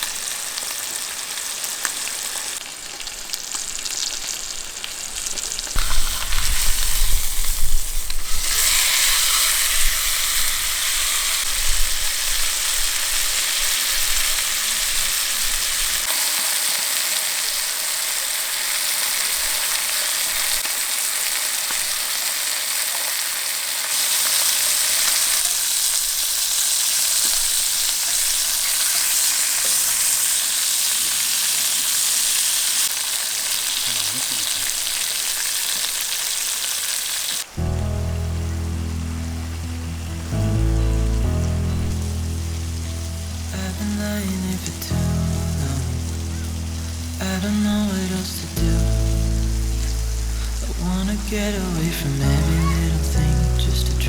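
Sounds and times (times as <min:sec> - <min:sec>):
food sizzling in a pan: 0:00.0 - 0:54.0
low rumbling: 0:37.6 - 0:54.0.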